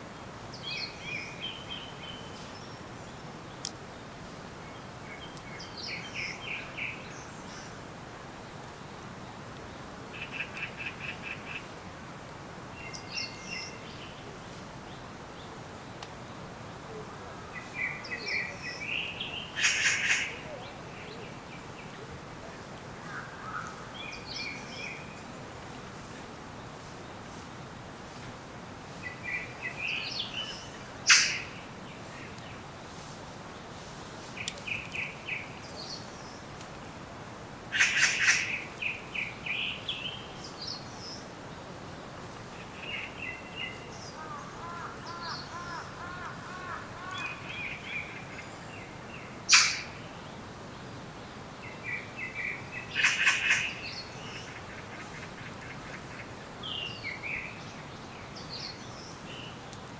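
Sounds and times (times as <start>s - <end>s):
steady background hiss: 0.0s - 59.9s
wild birds chirping and singing: 0.2s - 11.8s, 12.7s - 27.4s, 28.9s - 36.5s, 37.7s - 59.8s
sharp loud bird calls: 17.6s - 20.8s, 29.4s - 31.7s, 37.7s - 40.1s, 43.0s - 50.2s, 51.7s - 57.0s.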